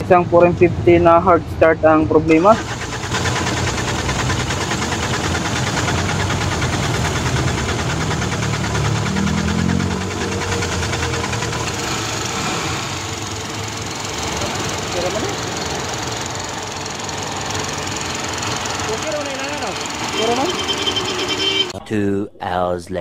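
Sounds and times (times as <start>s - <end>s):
diesel engine clattering: 0.0s - 21.8s.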